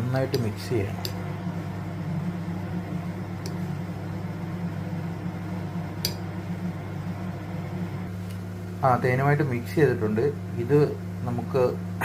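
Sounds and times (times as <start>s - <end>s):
low hum: 0.0s - 8.8s.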